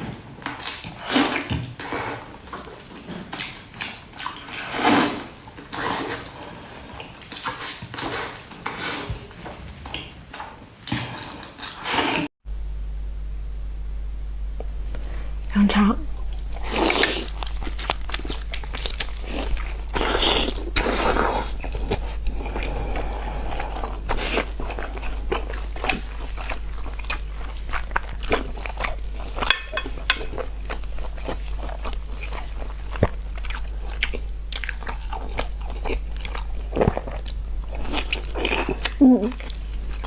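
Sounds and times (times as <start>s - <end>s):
steady low hum: 12.4s - 40.0s
person biting and chewing food: 16.1s - 40.0s.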